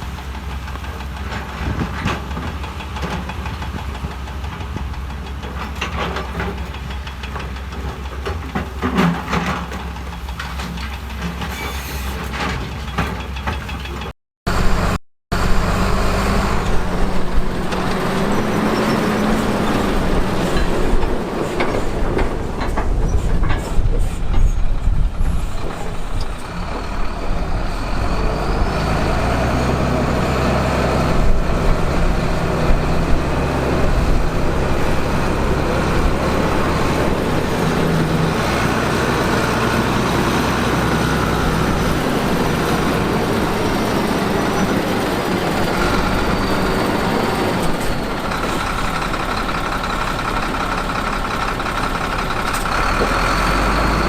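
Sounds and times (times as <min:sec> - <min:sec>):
diesel engine running: 0:00.0 - 0:54.0
metal clanks: 0:00.1 - 0:14.1.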